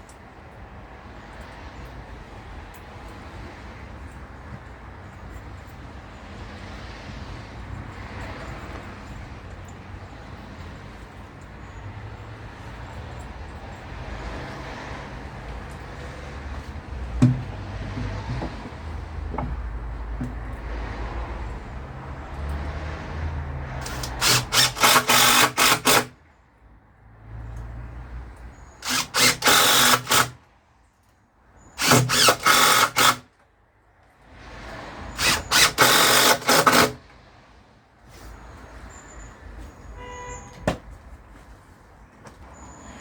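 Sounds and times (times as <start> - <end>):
cordless drill driving screws: 23.8 - 26.1, 28.8 - 30.4, 31.8 - 33.3, 35.2 - 37.0.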